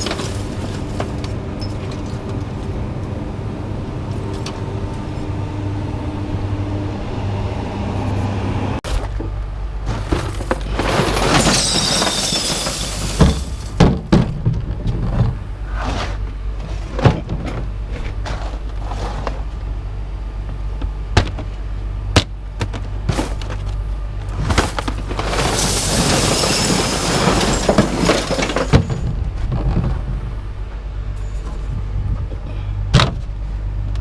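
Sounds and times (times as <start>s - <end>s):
steady low hum: 0.0s - 11.2s, 13.3s - 25.6s, 28.4s - 34.0s
metal clanks and bangs: 9.8s - 15.4s, 24.4s - 30.1s.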